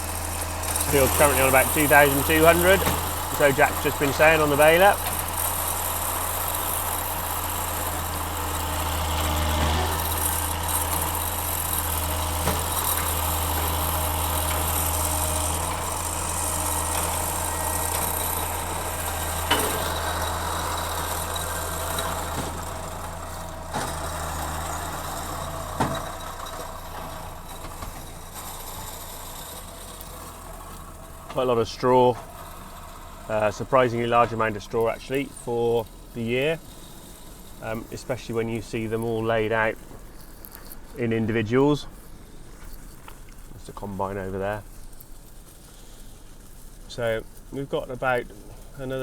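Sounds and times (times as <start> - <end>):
tractor engine running: 0.0 - 49.0.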